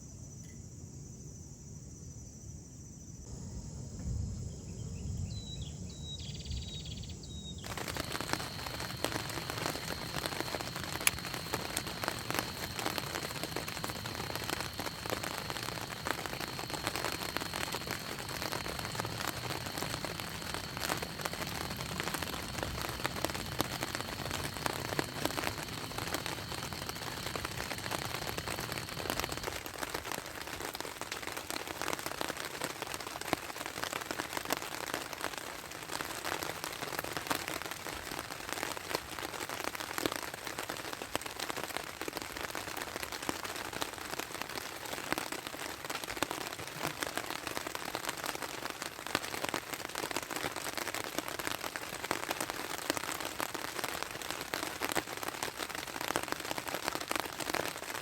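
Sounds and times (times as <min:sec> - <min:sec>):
steady rain pattering: 0:05.1 - 0:58.0.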